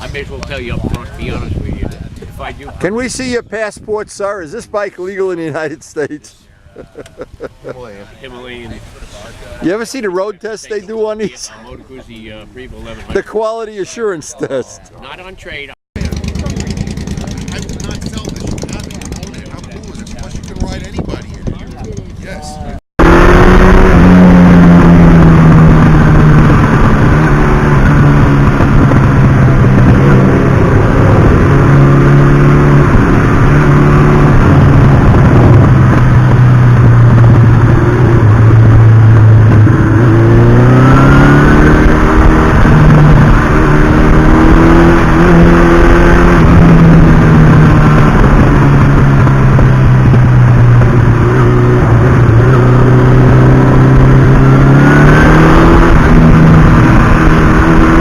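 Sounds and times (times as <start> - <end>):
motorcycle engine revving: 16.0 - 58.0.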